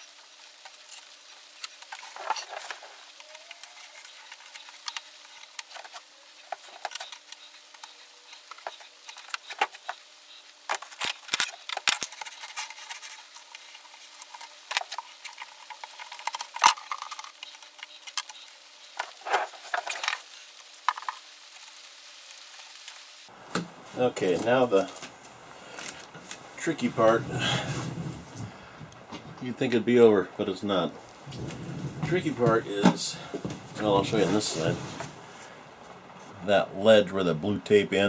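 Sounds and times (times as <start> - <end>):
hands smoothing sheet rustling: 26.1 - 28.8, 30.7 - 35.6.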